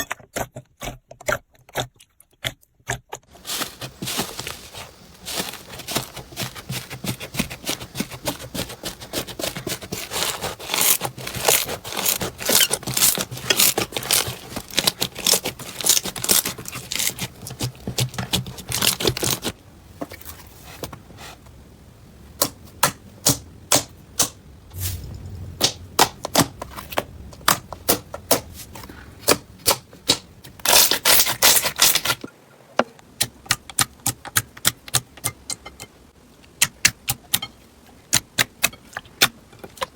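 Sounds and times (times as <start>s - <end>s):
slime crackling and popping: 2.9s - 19.5s, 29.2s - 32.2s.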